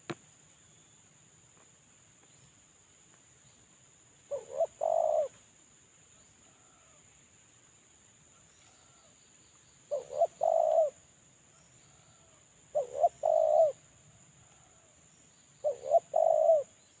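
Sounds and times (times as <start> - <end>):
dove cooing: 4.3 - 5.4, 9.9 - 11.0, 12.0 - 13.8, 15.6 - 16.8.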